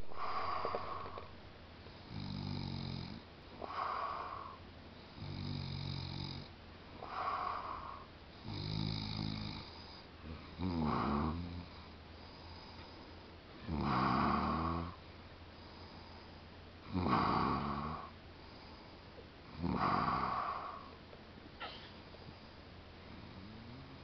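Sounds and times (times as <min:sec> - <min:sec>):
person snoring: 0:00.1 - 0:01.3, 0:02.0 - 0:04.6, 0:05.2 - 0:11.8, 0:13.7 - 0:15.0, 0:16.9 - 0:18.1, 0:19.5 - 0:21.0.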